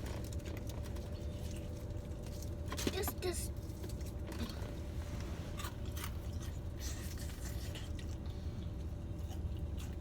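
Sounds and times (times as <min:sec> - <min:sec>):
person chewing food: 0:05.6 - 0:10.0.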